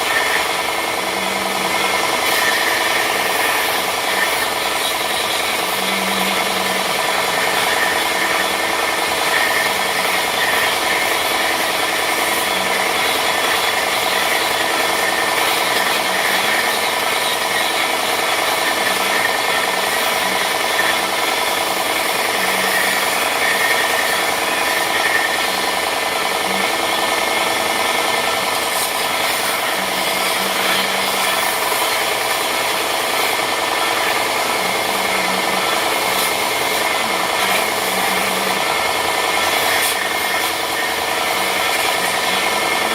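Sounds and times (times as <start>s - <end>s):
electric sander on wood: 0.0s - 42.9s.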